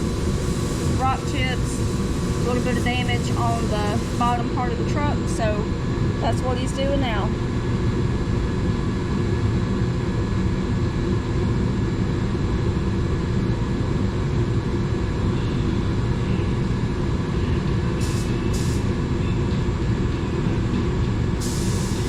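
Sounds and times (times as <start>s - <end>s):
short air hisses: 0.0s - 4.3s, 18.0s - 18.9s, 21.4s - 22.0s
machinery droning: 0.0s - 7.5s.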